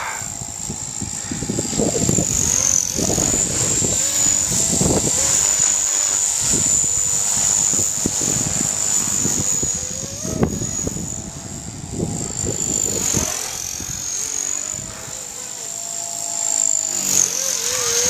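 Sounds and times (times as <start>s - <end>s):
wind buffeting microphone: 0.0s - 16.0s
rc helicopter motor whine: 0.0s - 18.0s.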